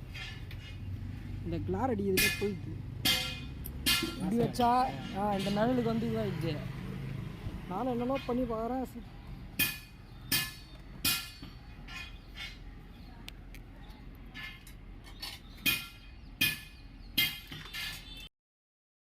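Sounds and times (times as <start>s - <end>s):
hard objects clinking and knocking: 2.2s - 5.8s.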